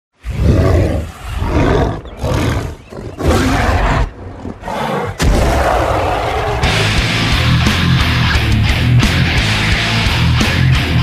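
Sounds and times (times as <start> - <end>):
animal-like roars: 0.2 - 7.3
distorted heavy metal band: 5.2 - 11.0.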